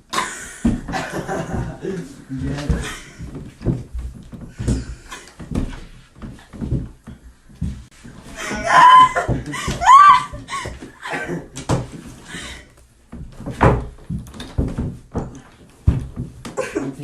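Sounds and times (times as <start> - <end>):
child shrieking: 8.6 - 9.2, 9.8 - 10.6.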